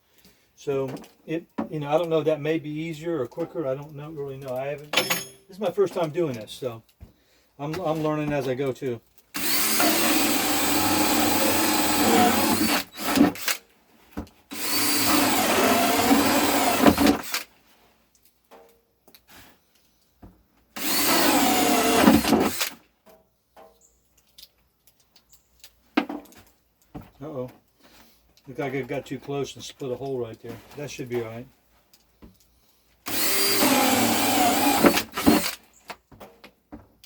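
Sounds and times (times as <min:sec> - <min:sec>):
electric drill boring holes: 0:09.4 - 0:13.6, 0:14.5 - 0:17.5, 0:20.8 - 0:22.8, 0:33.0 - 0:35.6.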